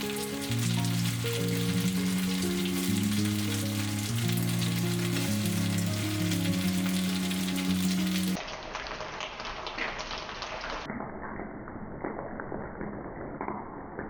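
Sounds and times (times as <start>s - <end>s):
slow low background music: 0.0s - 8.4s
food sizzling on a grill: 0.0s - 10.9s.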